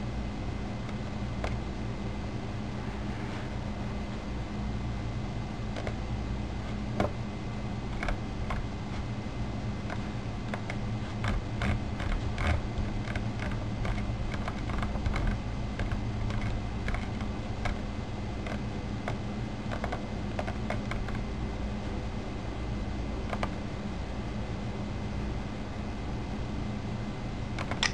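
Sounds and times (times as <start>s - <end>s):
steady low hum: 0.0s - 27.9s
computer keyboard typing: 9.9s - 21.2s.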